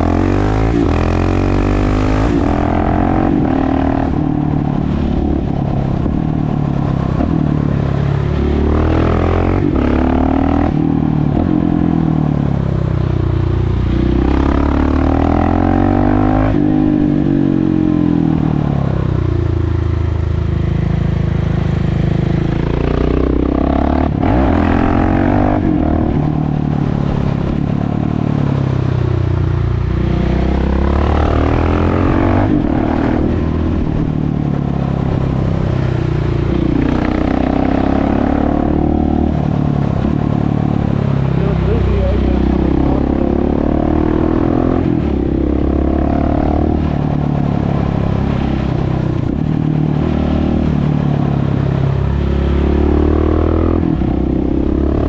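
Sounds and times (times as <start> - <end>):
motorcycle engine accelerating: 0.0 - 55.0.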